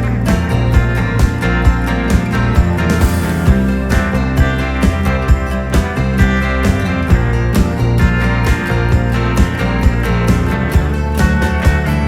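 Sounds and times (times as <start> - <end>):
song with strummed acoustic guitar: 0.0 - 12.0.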